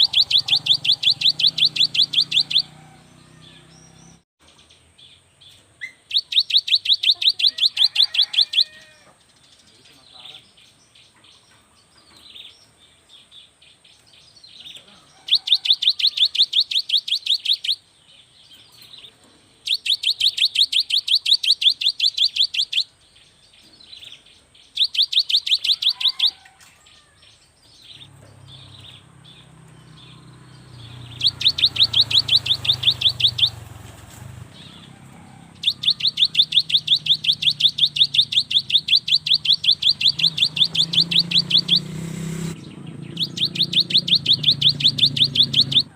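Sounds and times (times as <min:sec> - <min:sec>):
bird singing high notes: 0:00.0 - 0:04.2, 0:05.8 - 0:09.0, 0:19.6 - 0:23.0, 0:24.7 - 0:26.4, 0:27.9 - 0:34.9, 0:35.6 - 0:45.9
soft bird chirps: 0:00.0 - 0:45.9.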